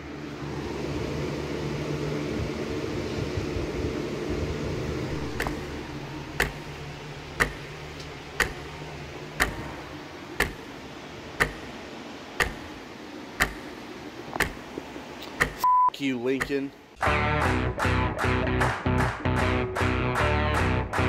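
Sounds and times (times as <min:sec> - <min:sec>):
low hum: 0:00.0 - 0:21.0
clock ticking: 0:05.1 - 0:05.6, 0:06.4 - 0:06.7, 0:07.4 - 0:07.8, 0:08.4 - 0:08.8, 0:09.4 - 0:09.8, 0:10.4 - 0:10.7, 0:11.3 - 0:11.8, 0:12.4 - 0:12.8, 0:13.4 - 0:13.8, 0:14.4 - 0:14.6, 0:16.3 - 0:16.8.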